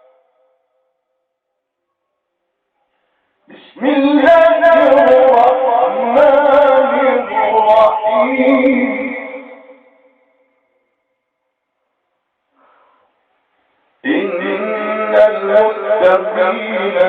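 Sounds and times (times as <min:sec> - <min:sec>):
man chanting melodically: 0:03.5 - 0:10.2, 0:14.0 - 0:17.0.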